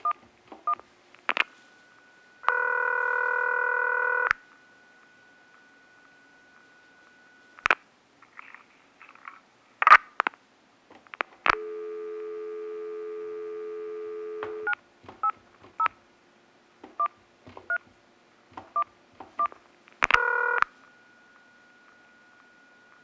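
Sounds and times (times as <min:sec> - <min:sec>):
faint steady high tone: 0:00.0 - 0:08.2, 0:11.6 - 0:14.8, 0:20.2 - 0:23.0
dial tone: 0:01.8 - 0:07.6, 0:11.6 - 0:14.7, 0:20.2 - 0:23.0
telephone click: 0:02.4 - 0:03.4, 0:06.5 - 0:10.4, 0:14.4 - 0:16.0, 0:18.6 - 0:20.7.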